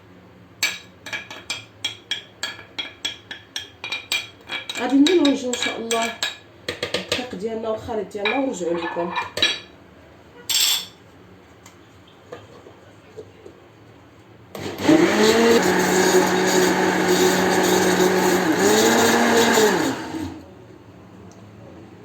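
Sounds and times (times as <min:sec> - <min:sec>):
electric blender whirring: 0:14.5 - 0:20.4.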